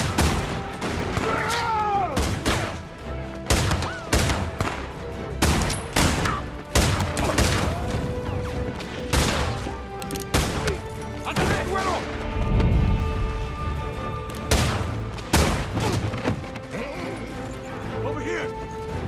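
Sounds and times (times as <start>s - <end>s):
orchestral score: 0.0s - 19.0s
gunshots with echo: 5.4s - 8.0s.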